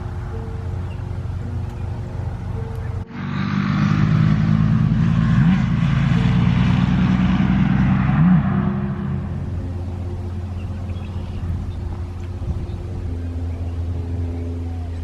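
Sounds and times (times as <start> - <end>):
vehicle engine running loudly: 0.0 - 15.0.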